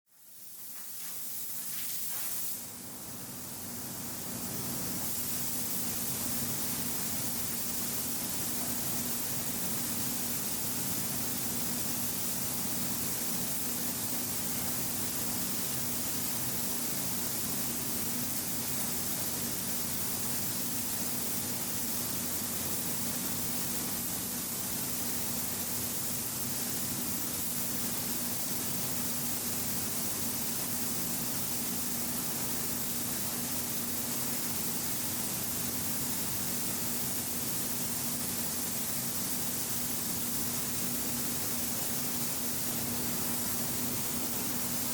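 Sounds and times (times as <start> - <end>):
air hissing: 0.4 - 2.7.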